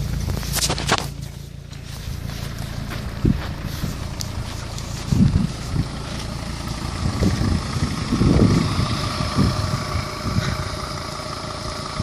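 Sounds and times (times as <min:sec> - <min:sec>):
diesel engine idling with whine: 0:00.0 - 0:12.0
wind buffeting microphone: 0:02.9 - 0:12.0.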